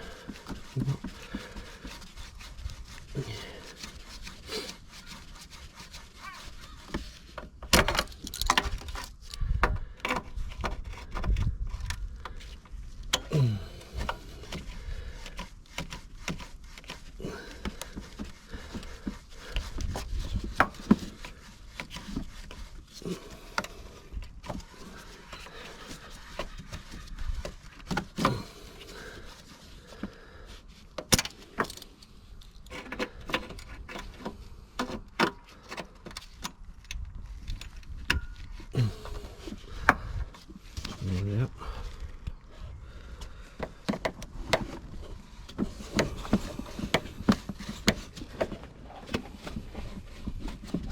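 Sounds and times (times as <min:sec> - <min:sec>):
metal clicks and scrapes: 0:00.0 - 0:29.7, 0:30.9 - 0:41.4.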